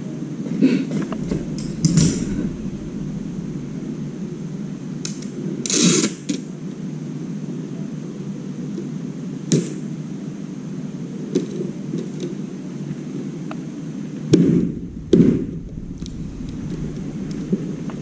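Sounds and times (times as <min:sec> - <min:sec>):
steady low hum: 0:00.9 - 0:08.1, 0:14.2 - 0:18.0
rustling scrape: 0:01.0 - 0:06.2.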